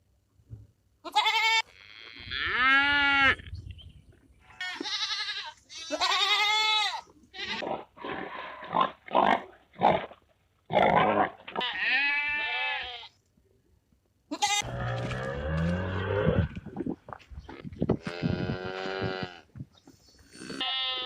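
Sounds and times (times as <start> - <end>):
goats bleating: 1.1 - 3.4, 4.6 - 7.6, 11.6 - 13.1, 14.3 - 16.5, 17.9 - 19.5, 20.4 - 21.0.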